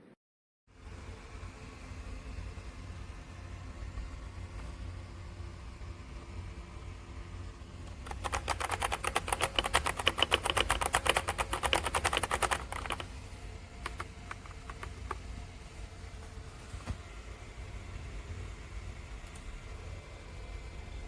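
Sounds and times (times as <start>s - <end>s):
fast typing on mechanical keyboard: 7.9s - 13.2s, 13.8s - 15.2s.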